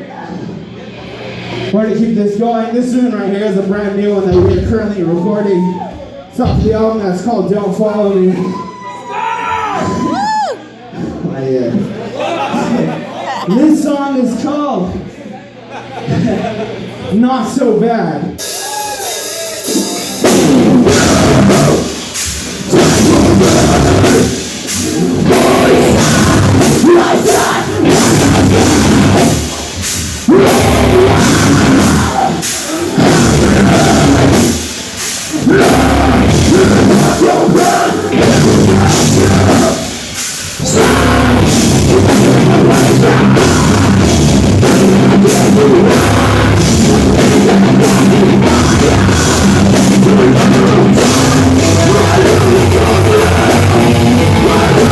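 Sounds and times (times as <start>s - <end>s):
live metal band playing: 18.4s - 54.9s.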